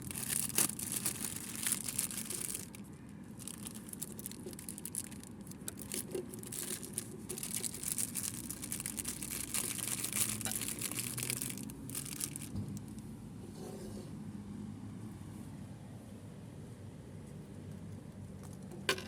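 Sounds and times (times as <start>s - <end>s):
packaging crinkling and rustling: 0.0s - 13.1s.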